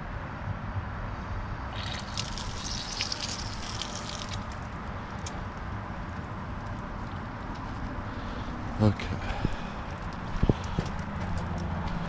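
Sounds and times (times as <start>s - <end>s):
garden hose water spraying: 1.7s - 5.7s.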